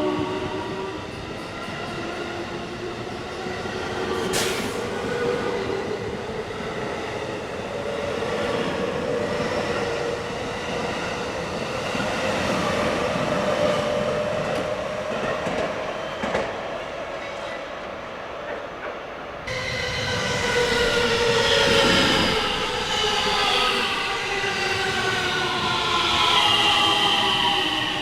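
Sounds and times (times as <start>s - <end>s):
rail and wheel noise: 0.0s - 28.0s
electric train motor whine: 19.5s - 28.0s.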